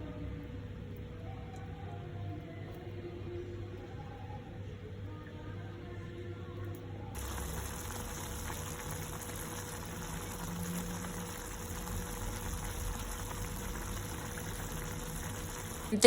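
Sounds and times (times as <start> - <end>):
gas burner flame hissing: 7.2 - 16.0.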